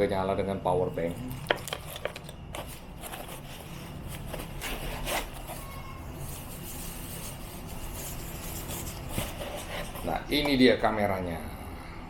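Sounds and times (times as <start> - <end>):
packaging rustling and scraping: 1.0 - 10.6.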